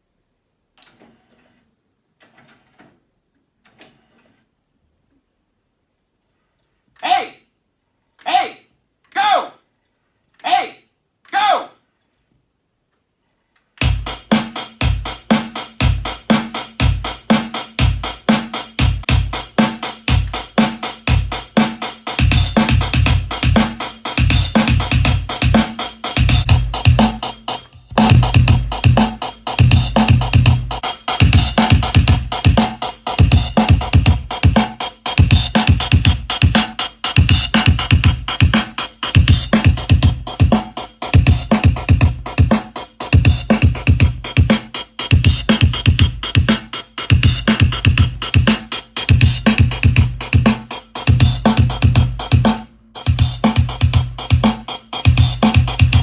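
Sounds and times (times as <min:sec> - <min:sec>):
electronic music: 0:13.8 - 0:56.0.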